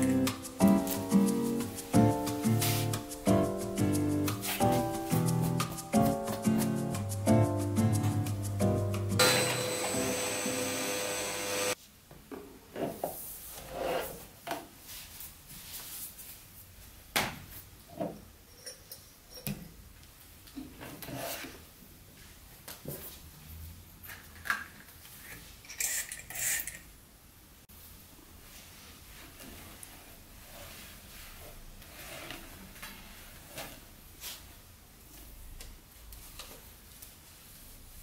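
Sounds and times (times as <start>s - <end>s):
background music: 0.0s - 10.9s.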